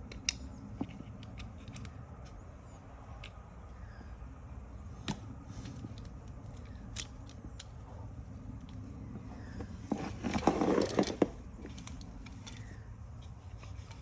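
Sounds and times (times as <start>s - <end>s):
small plastic clicks: 0.0s - 2.4s, 3.2s - 3.5s
knocking and scraping: 9.1s - 14.0s.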